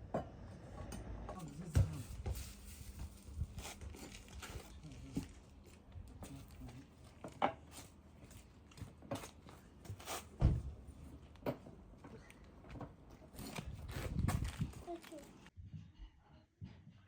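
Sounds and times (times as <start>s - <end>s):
dull thump: 10.4s - 10.8s.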